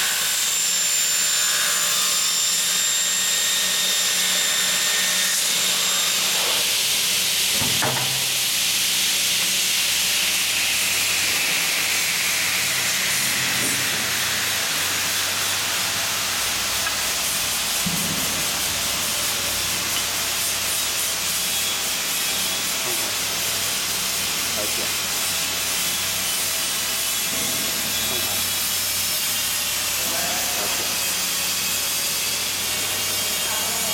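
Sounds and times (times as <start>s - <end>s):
mitre saw running: 0.0s - 33.9s.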